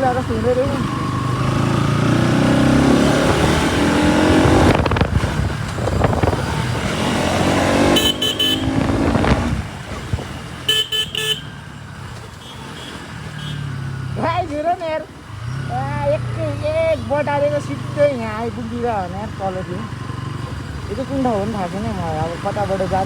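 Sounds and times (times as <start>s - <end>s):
motorcycle engine running: 0.0s - 23.0s
wind rush: 3.1s - 7.9s, 8.6s - 10.4s
vehicle horn beeps: 7.7s - 9.4s, 10.7s - 11.6s, 12.4s - 13.8s.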